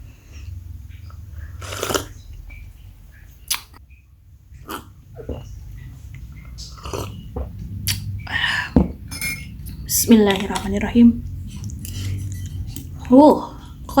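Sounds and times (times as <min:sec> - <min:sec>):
low steady rumble: 0:00.0 - 0:14.0
person gulping and swallowing: 0:01.4 - 0:02.2, 0:04.5 - 0:09.1.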